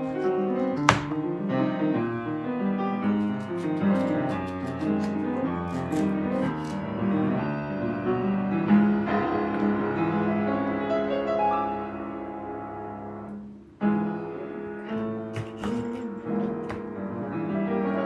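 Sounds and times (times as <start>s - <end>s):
piano music: 5.2s - 13.3s.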